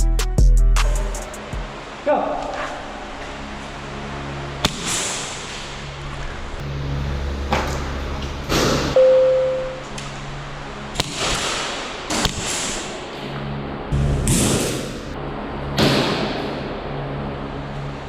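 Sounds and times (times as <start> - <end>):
background music: 0.0 - 1.8
airsoft gun shots: 4.6 - 5.7, 11.0 - 13.0.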